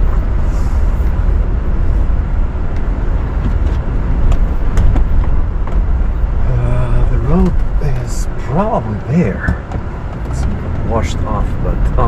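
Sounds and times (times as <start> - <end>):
engine and tyres rumbling: 0.0 - 12.0.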